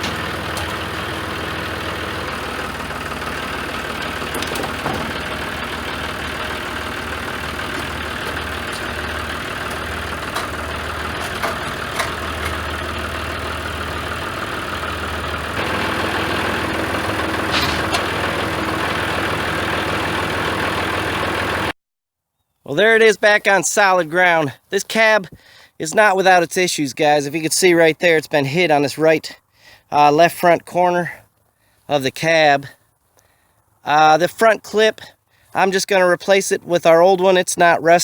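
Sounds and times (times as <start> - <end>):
engine humming: 0.0 - 21.7.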